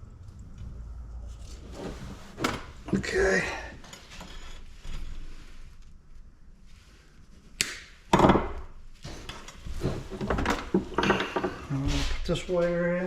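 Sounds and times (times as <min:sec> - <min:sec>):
metal parts and tools clattering: 0:09.1 - 0:11.7.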